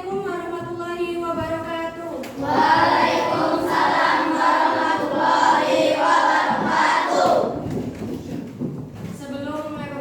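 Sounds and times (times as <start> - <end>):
children singing in unison: 2.4 - 7.6.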